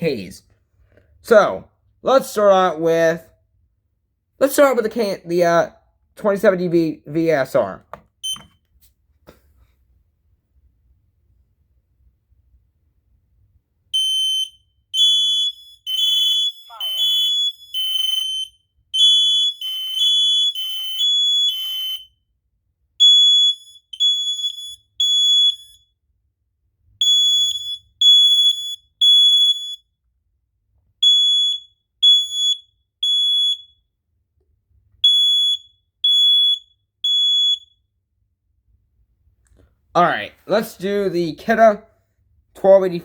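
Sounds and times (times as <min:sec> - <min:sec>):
smoke alarm beeping: 0:08.2 - 0:08.6, 0:14.0 - 0:22.3, 0:23.0 - 0:26.0, 0:27.0 - 0:30.0, 0:31.0 - 0:33.9, 0:35.0 - 0:37.9.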